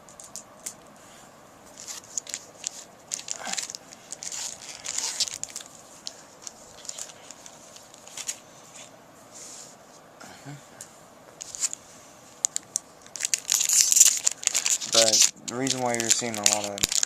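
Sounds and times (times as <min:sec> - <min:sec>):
foil wrapper tearing and crinkling: 0:01.8 - 0:08.4, 0:12.4 - 0:17.0.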